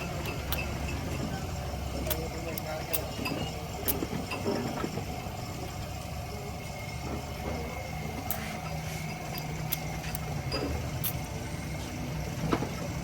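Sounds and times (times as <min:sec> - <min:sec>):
low engine-like hum: 0:00.0 - 0:13.0
metallic clicks of tools: 0:00.2 - 0:01.0, 0:02.0 - 0:04.4.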